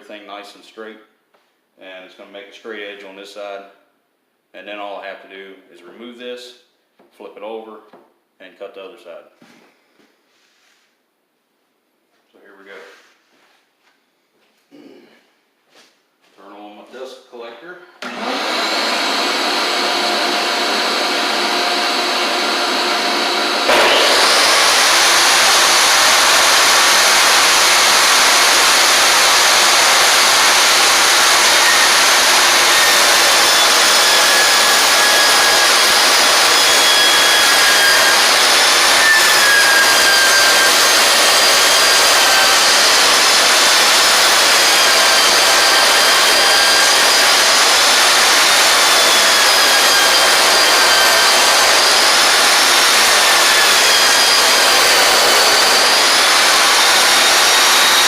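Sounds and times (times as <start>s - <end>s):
dust collector running: 18.0s - 58.0s
table saw ripping a board: 18.0s - 58.0s.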